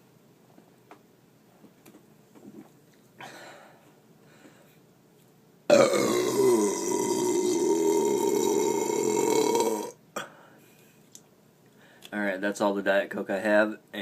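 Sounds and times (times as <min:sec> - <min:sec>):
long loud burp: 0:05.7 - 0:10.0.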